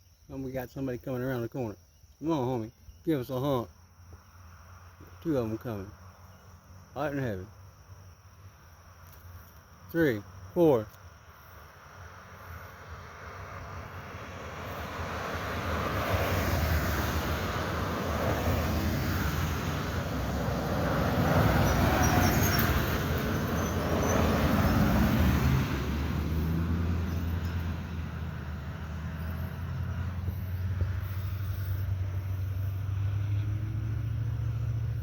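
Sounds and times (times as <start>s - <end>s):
cars driving past: 11.0s - 35.0s.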